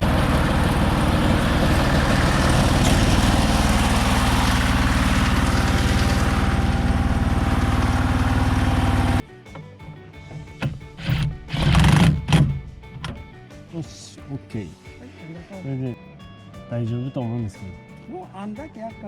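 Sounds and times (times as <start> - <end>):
harvester engine running: 0.0 - 9.2, 10.4 - 13.3.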